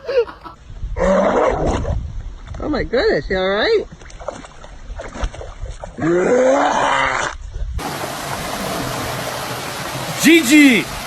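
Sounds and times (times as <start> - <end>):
steady hiss: 7.8 - 11.0.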